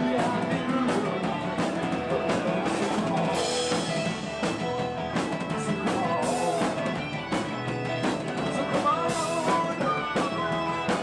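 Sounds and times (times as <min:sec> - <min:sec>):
rock band music: 0:00.0 - 0:11.0.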